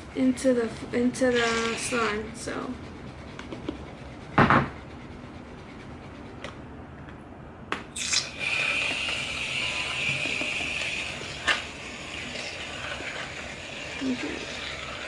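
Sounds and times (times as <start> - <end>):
knock on tabletop: 4.4 - 4.8
aerosol can hissing: 8.0 - 14.9.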